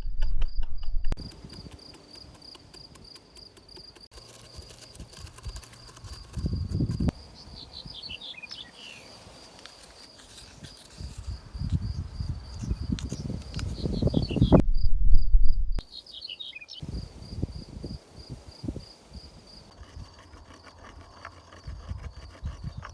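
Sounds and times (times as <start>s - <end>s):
crickets chirping: 1.2s - 14.6s, 15.8s - 22.2s
bird calls: 7.1s - 9.3s, 12.5s - 14.6s, 15.8s - 16.9s.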